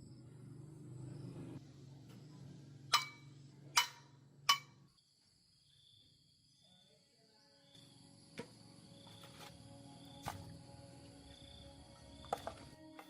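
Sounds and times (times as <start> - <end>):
sharp ringing metal strikes: 2.9 - 4.8.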